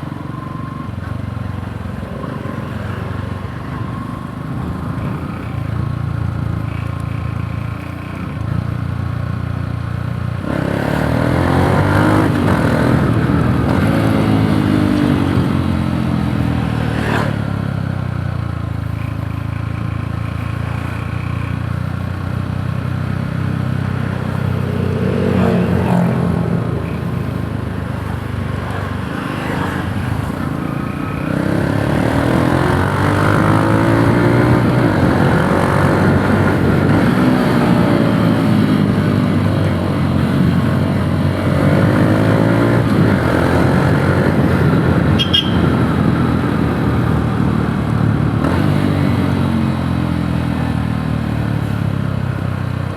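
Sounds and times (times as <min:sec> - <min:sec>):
motorcycle engine revving: 0:10.4 - 0:17.6, 0:23.2 - 0:52.1.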